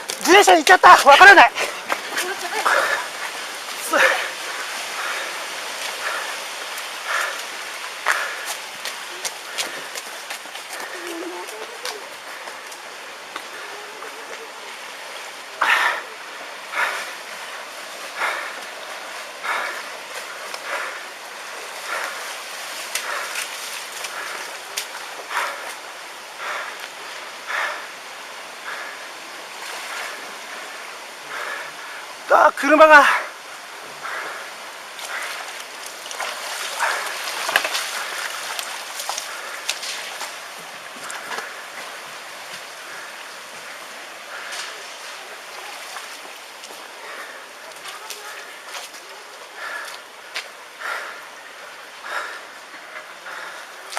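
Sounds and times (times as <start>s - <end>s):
rushing floodwater surging: 0.0s - 53.9s.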